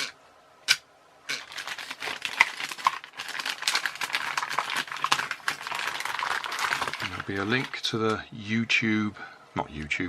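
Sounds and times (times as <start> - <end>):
crackling and rustling of handling: 1.3 - 8.3.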